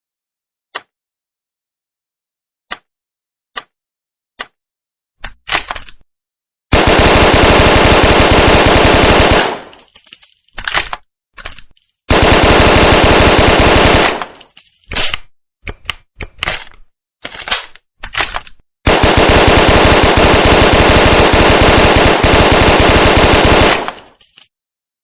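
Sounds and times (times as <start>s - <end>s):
metallic clicks of gun handling: 5.2s - 6.0s, 9.8s - 12.0s, 14.1s - 18.6s
submachine gun automatic fire: 6.7s - 9.8s, 12.1s - 14.4s, 18.9s - 24.2s.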